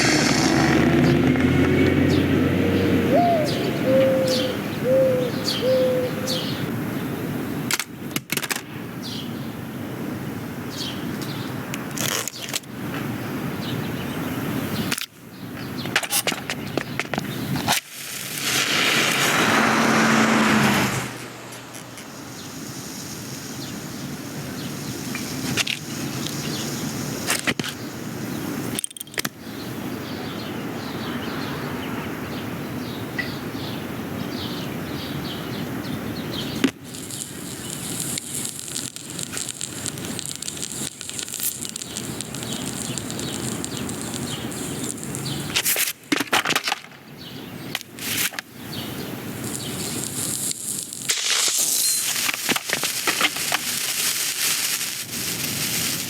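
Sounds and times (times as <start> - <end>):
rushing crackling noise: 0.0 - 6.7, 16.0 - 28.7, 36.5 - 46.2, 47.8 - 56.0
sharp cracks: 17.6 - 22.9, 36.6 - 47.0, 49.4 - 56.0.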